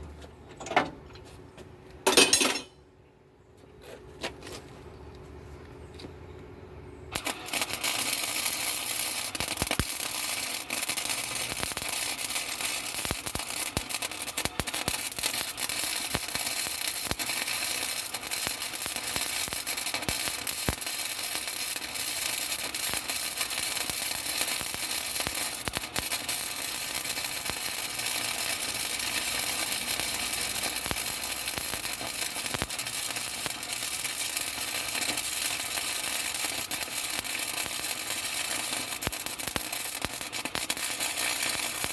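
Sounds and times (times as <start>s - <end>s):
arc welder crackling: 7.0s - 41.9s.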